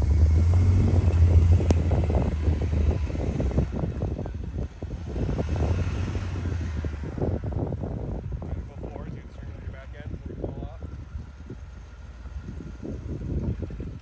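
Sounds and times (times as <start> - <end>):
knocks and crunches on snowy trail: 0.0 - 2.7
engine running with low rumble: 0.0 - 14.0.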